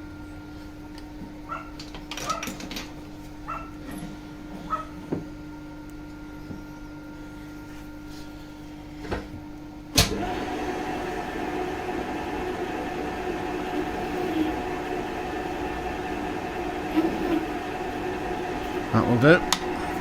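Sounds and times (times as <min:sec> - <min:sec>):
lathe running: 0:10.1 - 0:20.0.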